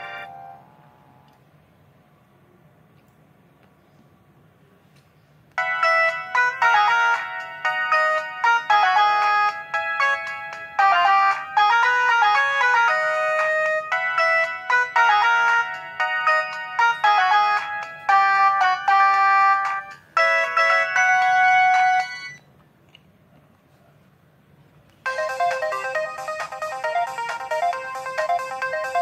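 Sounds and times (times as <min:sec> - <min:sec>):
synthesized ringtone melody: 0:00.0 - 0:01.1, 0:05.6 - 0:22.5, 0:25.1 - 0:29.0.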